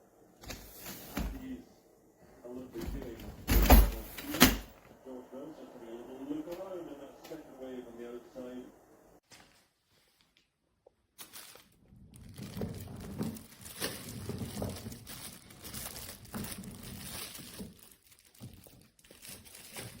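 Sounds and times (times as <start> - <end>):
crinkling and rustling handling noise: 0.4 - 1.6, 2.5 - 4.9, 9.2 - 20.0.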